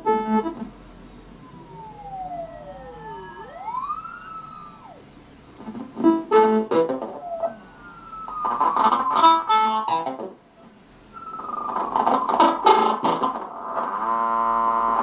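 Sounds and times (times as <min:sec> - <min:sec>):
synthesizer tones sliding in pitch: 0:01.4 - 0:05.1, 0:06.6 - 0:10.0, 0:11.1 - 0:15.0
short buzzy synthesizer notes: 0:12.4 - 0:15.0.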